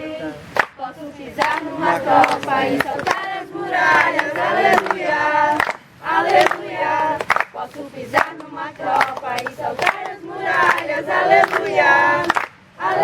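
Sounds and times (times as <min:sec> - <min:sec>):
group of people singing: 0:00.0 - 0:13.0
hand claps: 0:00.5 - 0:00.8, 0:01.4 - 0:03.3, 0:03.9 - 0:13.0.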